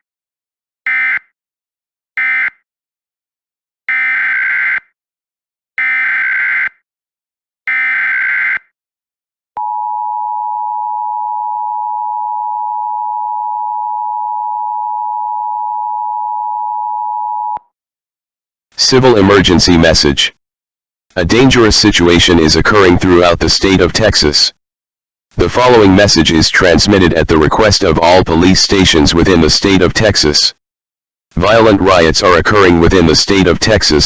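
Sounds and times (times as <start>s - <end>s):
steady attention tone: 9.6s - 17.6s.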